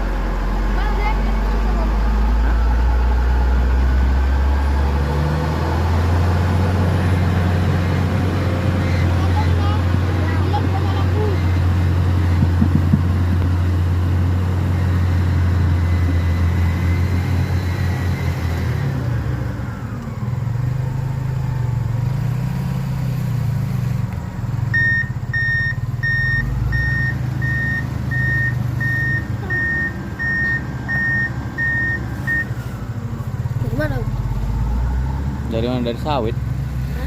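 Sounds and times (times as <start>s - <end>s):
heavy vehicle engine running: 0.0s - 37.0s
reversing alarm beeping: 24.7s - 32.6s.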